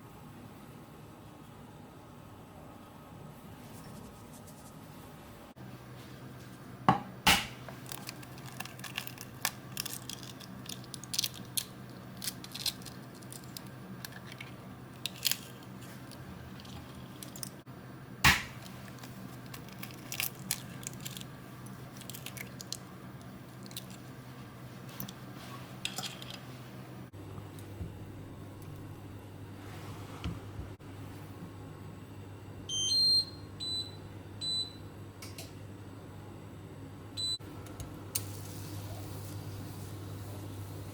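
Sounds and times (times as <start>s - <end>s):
steady low hum: 0.0s - 40.9s.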